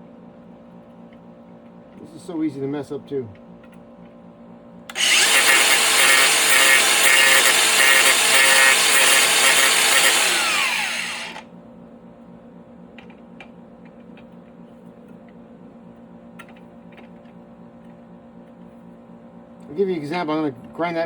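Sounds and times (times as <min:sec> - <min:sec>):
power grinder grinding plastic: 0:04.9 - 0:11.4.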